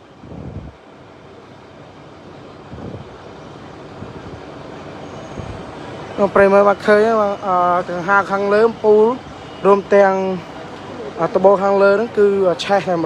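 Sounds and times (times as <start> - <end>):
street noise: 0.0 - 13.0
faint voices: 2.6 - 13.0.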